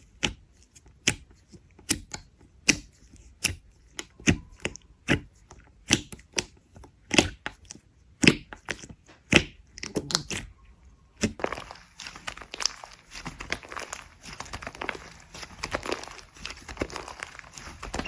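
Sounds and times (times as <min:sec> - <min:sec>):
slime crinkly crackling: 0:07.1 - 0:18.0.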